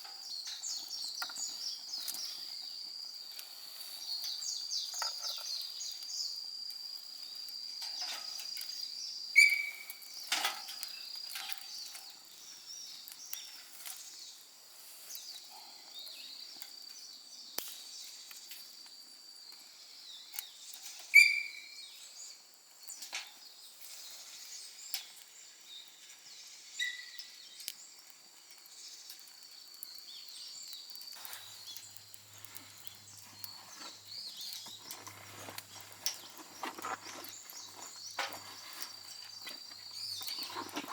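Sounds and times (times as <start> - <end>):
campfire crackling: 0.0 - 21.2, 21.8 - 40.9.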